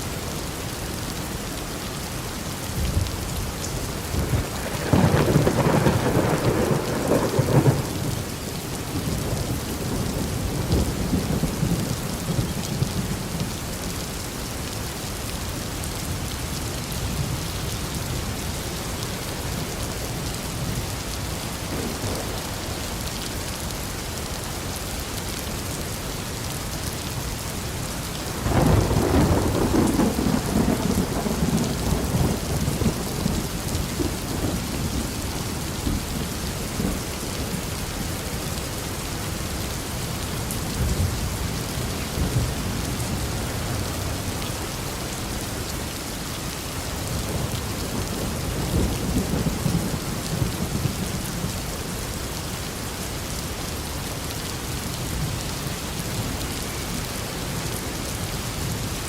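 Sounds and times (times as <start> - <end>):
steady rain pouring: 0.0 - 59.0
rolling thunder: 4.1 - 8.3, 28.4 - 35.1.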